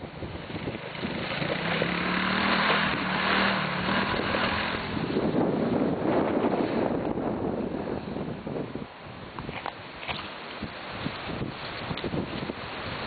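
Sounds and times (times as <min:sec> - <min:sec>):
atv engine droning: 0:00.0 - 0:08.2
wind on microphone: 0:00.0 - 0:13.0.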